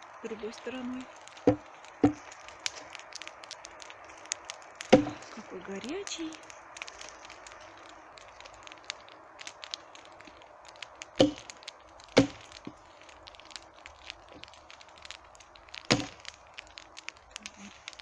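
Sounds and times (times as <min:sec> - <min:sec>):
campfire crackling: 0:00.0 - 0:18.0
loud sharp fire cracks: 0:00.0 - 0:18.0.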